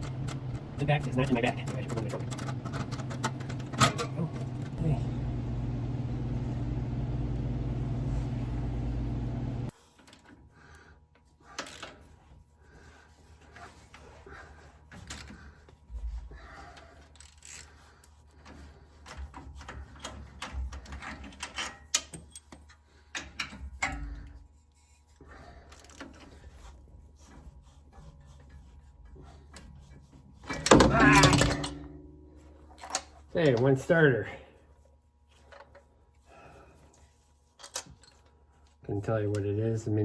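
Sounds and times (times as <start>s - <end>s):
steady low hum: 0.0s - 9.7s.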